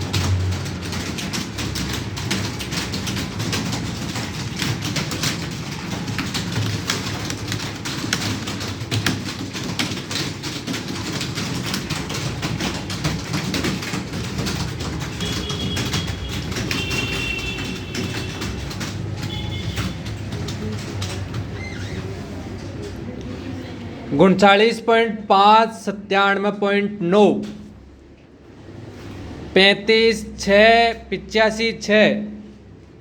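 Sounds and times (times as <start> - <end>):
computer keyboards clattering: 0.0 - 28.0.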